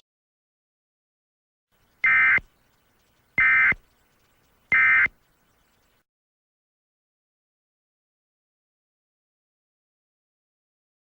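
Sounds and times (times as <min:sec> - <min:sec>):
short buzzing digital data bursts: 0:02.0 - 0:06.0.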